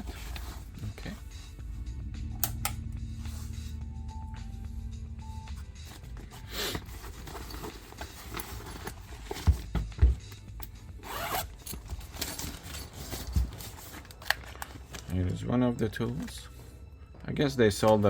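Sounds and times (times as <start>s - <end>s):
zipper pulled open: 11.0s - 11.5s.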